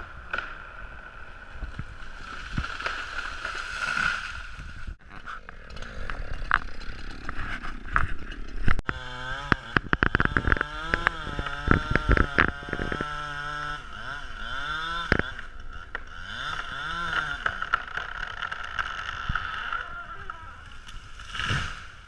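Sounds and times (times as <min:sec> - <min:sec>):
clicks and thumps: 0:05.0 - 0:13.2
engine revving: 0:05.0 - 0:21.9.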